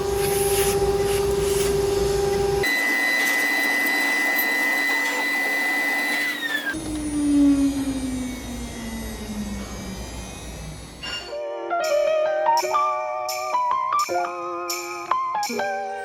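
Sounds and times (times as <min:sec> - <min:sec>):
router spindle whine: 0:00.0 - 0:11.3
wood cutting noise: 0:00.0 - 0:11.3.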